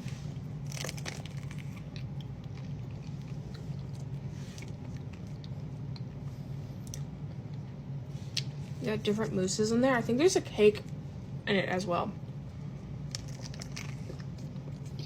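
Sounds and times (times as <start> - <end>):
chewing with wet mouth clicks: 0.9 - 7.7.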